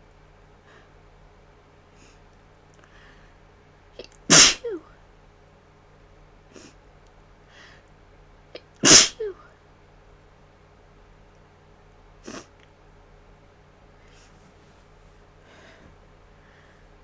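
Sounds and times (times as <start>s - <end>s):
woman sneezing: 4.3s - 4.9s, 8.6s - 9.5s.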